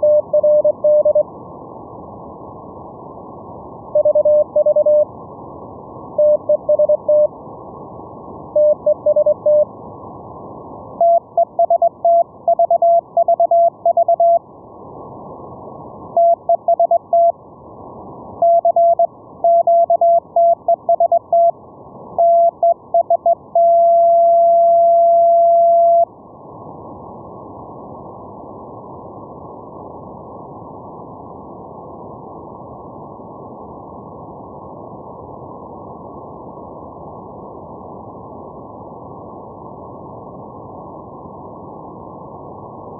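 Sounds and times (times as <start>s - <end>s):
morse code tones: 0.0s - 1.2s, 4.0s - 5.0s, 6.2s - 7.3s, 8.6s - 9.6s, 11.0s - 14.4s, 16.2s - 17.3s, 18.4s - 21.5s, 22.2s - 26.1s.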